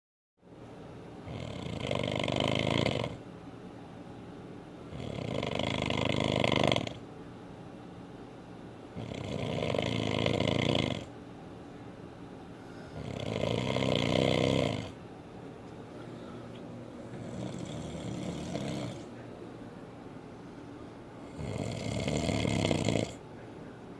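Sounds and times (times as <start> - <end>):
man snoring loudly: 1.2 - 3.2, 4.9 - 7.0, 9.0 - 11.1, 13.0 - 15.0, 17.2 - 19.1, 21.2 - 23.2.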